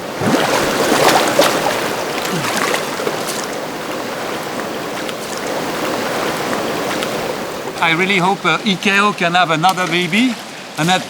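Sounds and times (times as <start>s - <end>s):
running water rushing: 0.0s - 11.0s.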